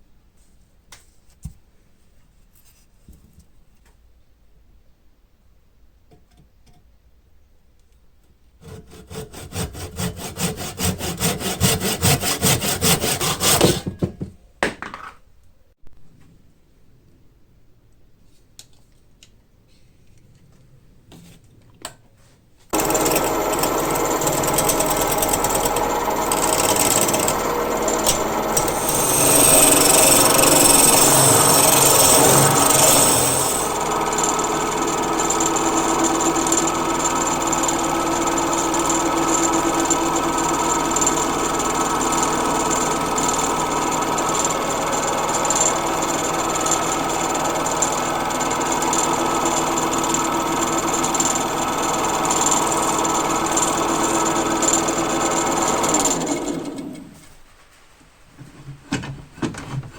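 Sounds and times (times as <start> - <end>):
wood lathe humming: 8.6 - 13.8, 22.8 - 57.1
tool cutting spinning wood: 8.6 - 14.0, 22.8 - 57.2.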